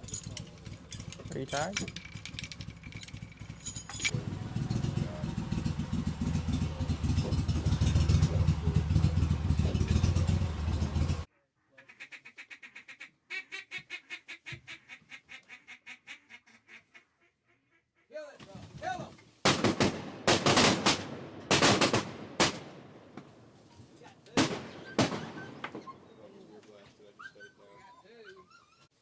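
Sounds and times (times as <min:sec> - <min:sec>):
vehicle engine rumble: 0:00.0 - 0:11.3, 0:20.1 - 0:27.0
ducks quacking: 0:04.3 - 0:18.2.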